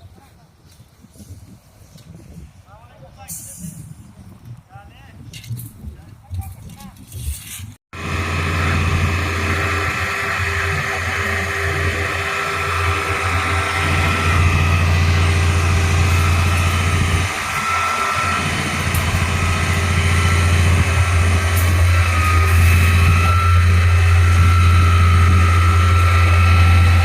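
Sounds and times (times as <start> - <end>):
construction machine engine humming: 8.0 - 27.0.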